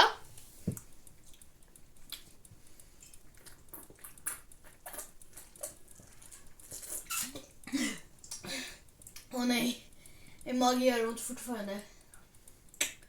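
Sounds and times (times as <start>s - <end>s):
squishy mouth sounds: 3.0s - 7.5s.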